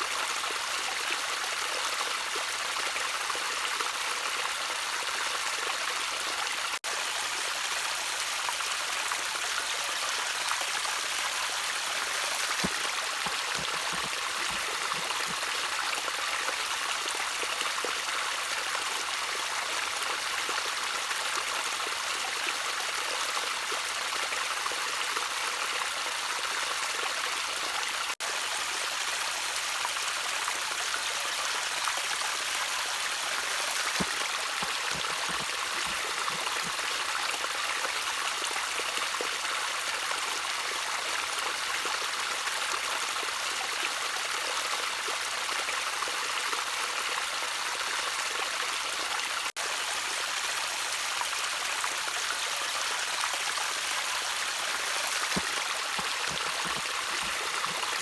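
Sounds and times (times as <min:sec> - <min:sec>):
water trickling: 0:10.5 - 0:17.7, 0:32.5 - 0:37.5, 0:54.4 - 0:58.0.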